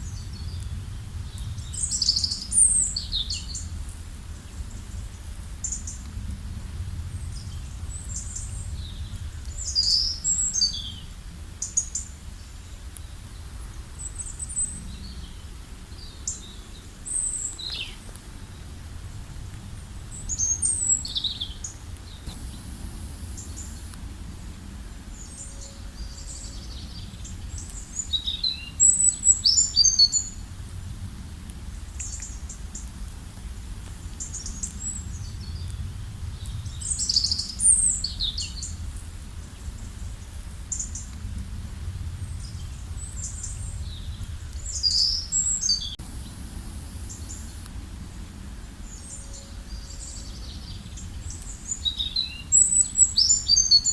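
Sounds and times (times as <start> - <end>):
small birds chirping: 0.0 - 3.8, 7.2 - 18.8, 19.8 - 30.5, 42.2 - 53.9
low rumble: 14.5 - 29.4, 30.2 - 51.7.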